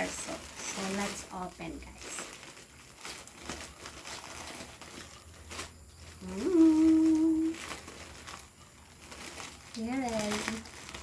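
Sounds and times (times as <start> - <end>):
packaging crinkling and tearing: 0.0 - 11.0
person humming: 6.2 - 7.6.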